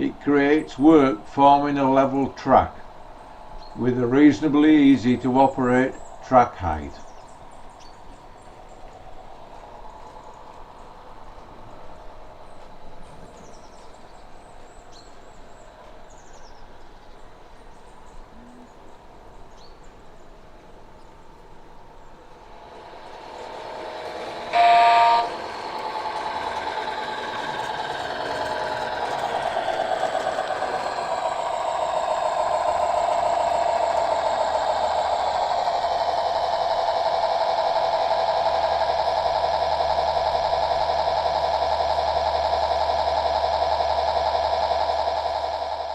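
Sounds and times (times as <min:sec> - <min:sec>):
model train running: 0:00.0 - 0:45.9
faint bird chirps: 0:12.5 - 0:21.2
train whistle: 0:22.6 - 0:28.2.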